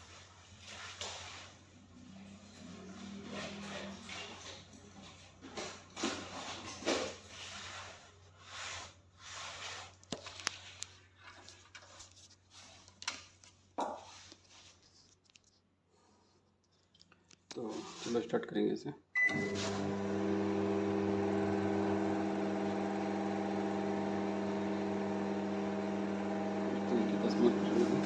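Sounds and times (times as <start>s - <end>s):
rustling handling noises: 0.1s - 18.4s.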